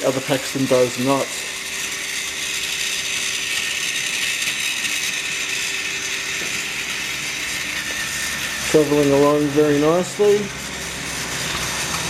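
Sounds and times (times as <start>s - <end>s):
toy train motors whirring: 0.0s - 12.0s.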